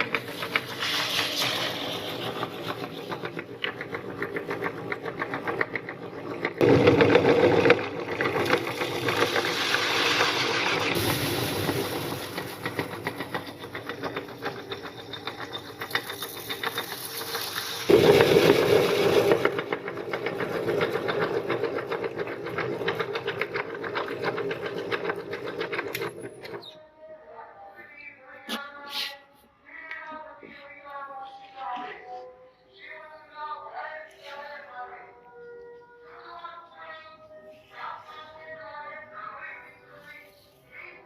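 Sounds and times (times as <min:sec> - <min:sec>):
meat grinder mechanical chatter: 0:00.0 - 0:26.7.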